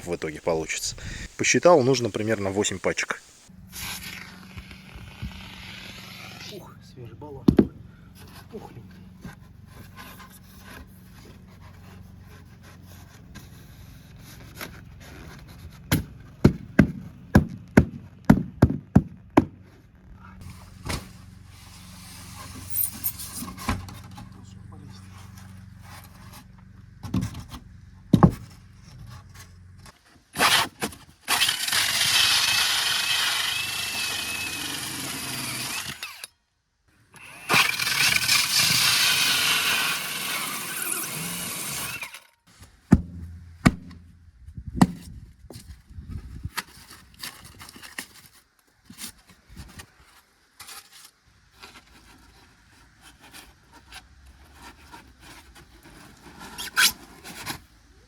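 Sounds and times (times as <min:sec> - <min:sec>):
power saw cutting: 0:00.0 - 0:06.6, 0:31.3 - 0:36.3, 0:37.2 - 0:42.4
knocks and scrapes: 0:07.5 - 0:31.2, 0:41.8 - 0:57.9.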